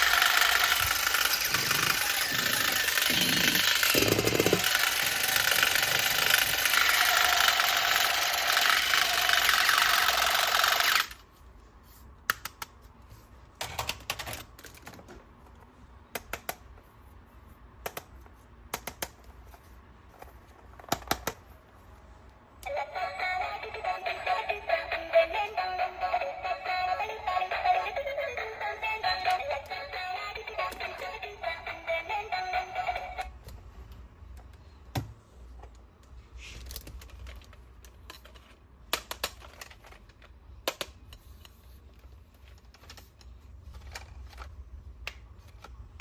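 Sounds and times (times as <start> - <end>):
harsh mechanical buzz: 0.0 - 11.2
music with synthesized singing: 22.6 - 33.3.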